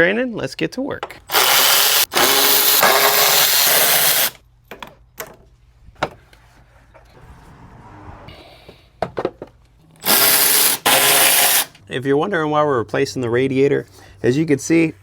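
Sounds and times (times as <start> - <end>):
handheld power tool running: 1.3 - 4.4, 10.0 - 11.8.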